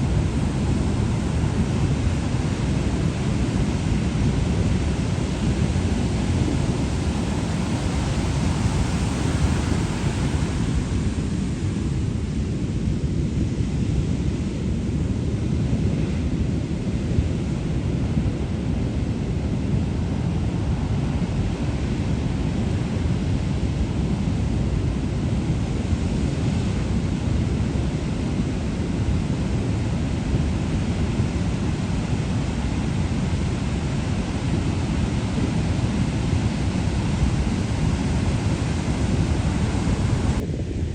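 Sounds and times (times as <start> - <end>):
heavy surf waves breaking: 0.0 - 12.4, 25.8 - 40.4.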